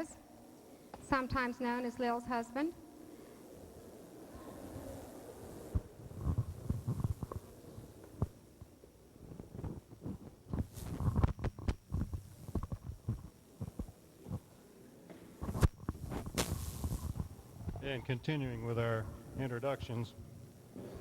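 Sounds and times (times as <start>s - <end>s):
microphone handling thumps: 9.2s - 14.4s, 15.4s - 17.9s.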